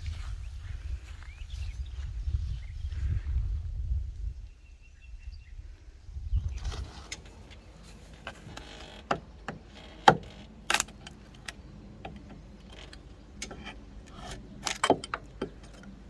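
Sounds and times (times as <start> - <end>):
steady low rumble: 0.0 - 8.6
sharp clicks and knocks: 7.0 - 16.0.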